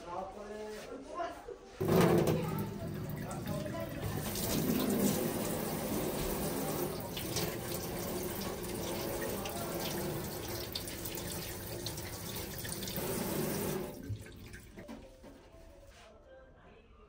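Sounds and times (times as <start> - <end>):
tap water running into sink: 1.8 - 15.1.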